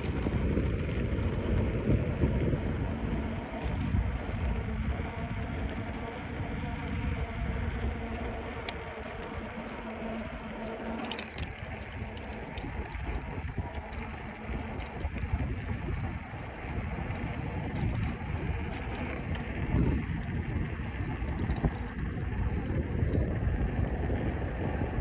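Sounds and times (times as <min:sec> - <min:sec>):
bicycle tyre road rumble: 0:00.0 - 0:25.0
wind buffeting microphone: 0:00.0 - 0:25.0.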